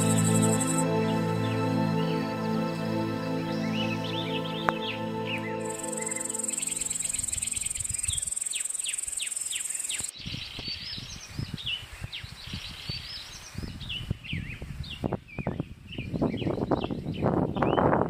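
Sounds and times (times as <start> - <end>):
high insect buzz: 0.0 - 0.8, 5.4 - 10.1
songbirds chirping: 0.0 - 17.9.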